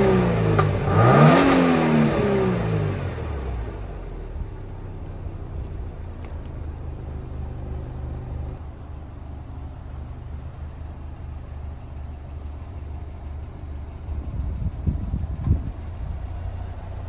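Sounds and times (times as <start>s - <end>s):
car engine idling: 0.0s - 17.0s.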